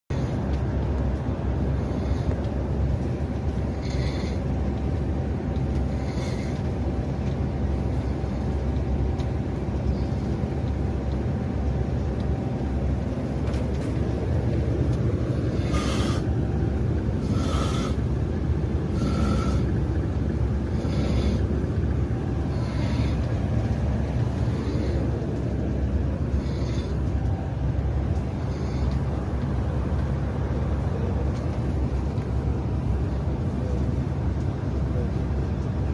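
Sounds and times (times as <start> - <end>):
bus rumbling: 0.1 - 35.9
person snoring: 17.2 - 18.0, 18.9 - 19.7.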